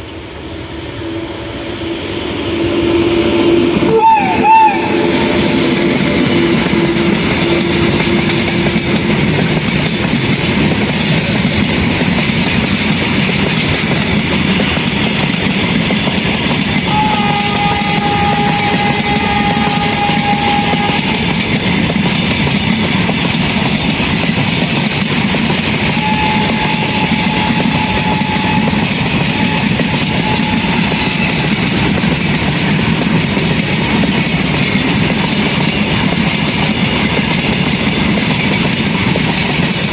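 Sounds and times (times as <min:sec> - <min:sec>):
train wagons rumbling and clattering: 0:00.0 - 0:39.9
train horn: 0:01.0 - 0:09.5, 0:16.8 - 0:21.6, 0:25.7 - 0:32.0.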